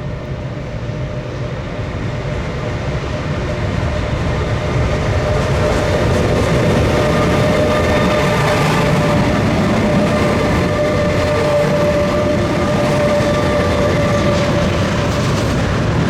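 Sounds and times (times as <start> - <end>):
train rumble: 0.0 - 16.0
freight train wagons squealing: 5.4 - 16.0.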